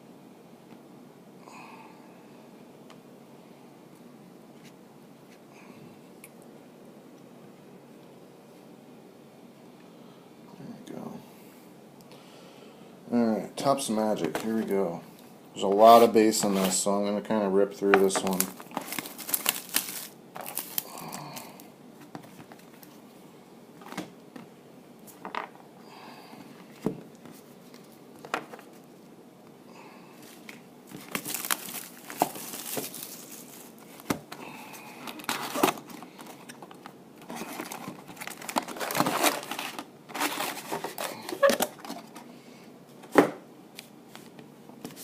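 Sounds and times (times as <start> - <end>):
plastic wrapping tearing and crinkling: 18.1 - 21.6, 30.9 - 34.1, 35.1 - 42.2.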